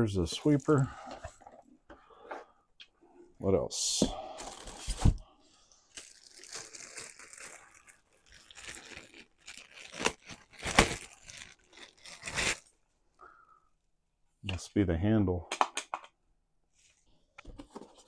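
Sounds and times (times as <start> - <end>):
packaging rustling and crinkling: 5.9 - 12.7.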